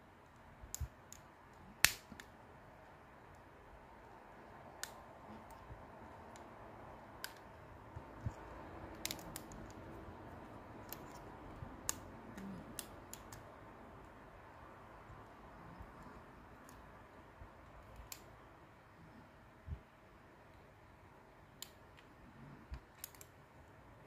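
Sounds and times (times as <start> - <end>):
faint steady hiss: 0.0 - 24.0.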